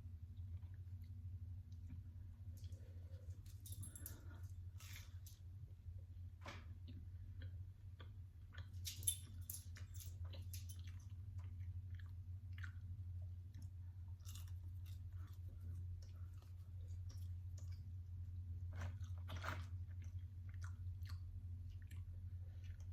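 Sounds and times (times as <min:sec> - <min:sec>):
steady low hum: 0:00.0 - 0:22.9
person chewing food: 0:06.5 - 0:08.8, 0:09.7 - 0:22.9.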